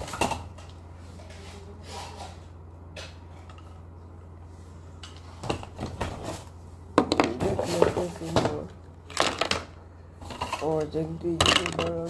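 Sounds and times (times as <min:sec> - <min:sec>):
steady low hum: 0:00.0 - 0:12.0
plastic toy parts rustling: 0:10.4 - 0:12.0.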